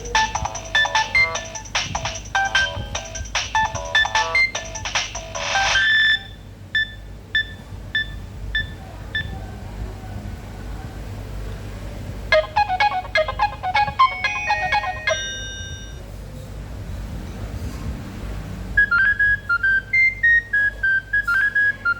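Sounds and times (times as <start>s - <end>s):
electronic ringtone melody: 0.0s - 6.4s, 12.3s - 16.0s
short phone beeps: 5.6s - 9.3s, 12.3s - 16.0s.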